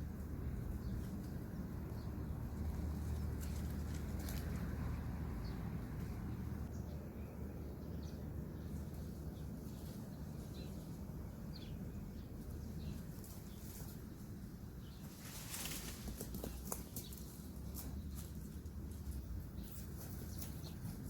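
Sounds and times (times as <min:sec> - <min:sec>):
steady low rumble: 0:00.0 - 0:13.1.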